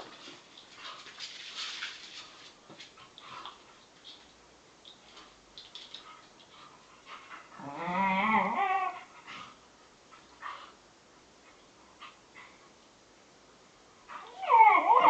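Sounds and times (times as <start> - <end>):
faint scuffling of dogs: 0.0 - 15.0
dog whining grumble: 7.5 - 9.5, 14.1 - 15.0.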